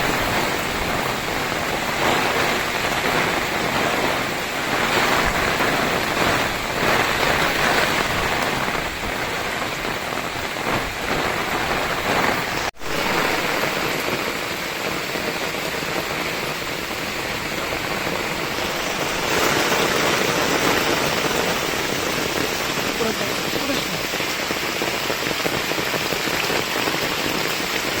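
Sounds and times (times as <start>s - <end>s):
heavy rain hissing: 0.0s - 28.0s.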